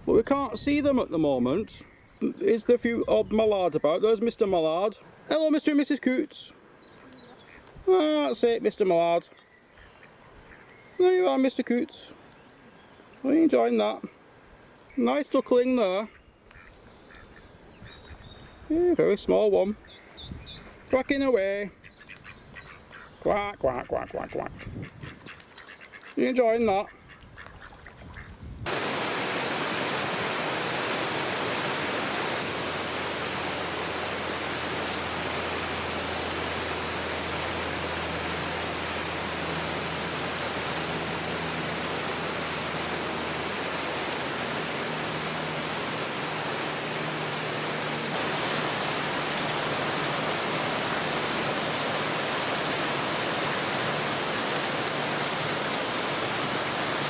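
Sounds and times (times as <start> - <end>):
steady rushing hiss: 28.7 - 57.0.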